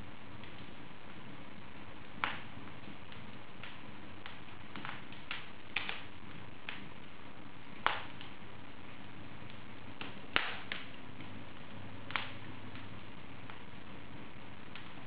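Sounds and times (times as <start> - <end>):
fire crackling and popping: 0.0 - 15.0
fire hissing: 0.0 - 15.0.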